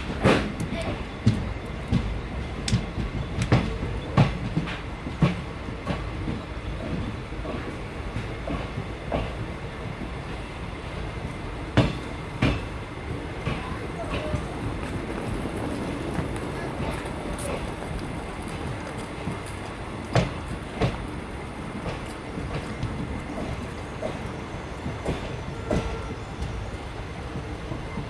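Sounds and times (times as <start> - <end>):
train carriage rumble: 0.0 - 28.0
wheels clacking over rail joints: 11.2 - 28.0.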